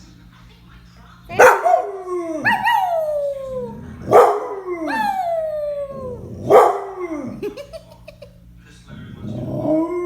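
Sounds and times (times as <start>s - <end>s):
dog howling: 1.4s - 7.6s, 9.2s - 10.0s.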